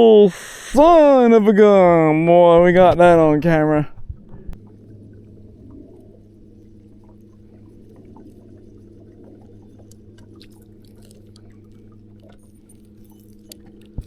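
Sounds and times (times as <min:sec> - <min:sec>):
low hum with even tones: 0:00.0 - 0:14.0
faint ticks and drips: 0:03.9 - 0:14.0.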